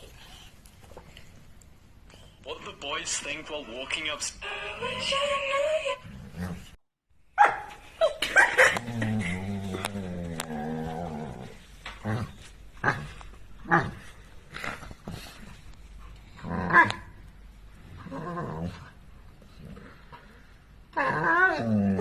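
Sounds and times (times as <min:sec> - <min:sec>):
dog growling: 0:06.0 - 0:06.8, 0:08.6 - 0:15.6, 0:16.3 - 0:17.1, 0:17.9 - 0:20.3, 0:20.9 - 0:22.0
dog barking: 0:07.4 - 0:07.8.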